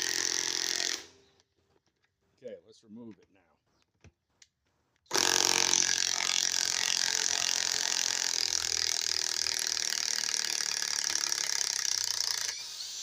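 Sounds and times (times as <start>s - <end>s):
impact wrench hammering: 0.0s - 1.1s, 5.1s - 13.0s.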